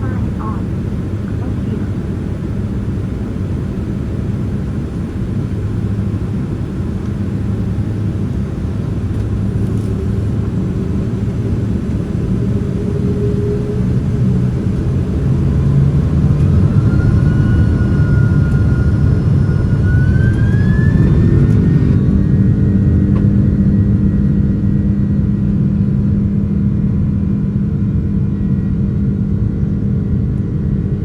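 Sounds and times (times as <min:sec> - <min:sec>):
jet engine rumble in cabin: 0:00.0 - 0:31.0
jet engines spooling up whine: 0:00.0 - 0:31.0.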